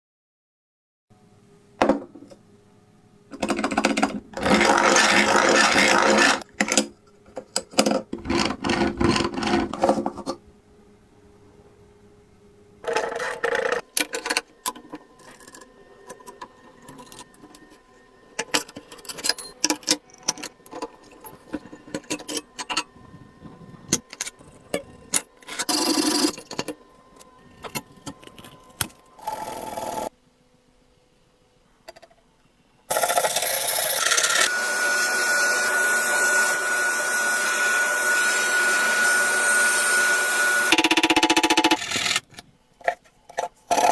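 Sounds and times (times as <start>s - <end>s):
hand coffee grinder scraping: 4.4s - 6.5s, 8.2s - 10.4s, 41.7s - 43.9s.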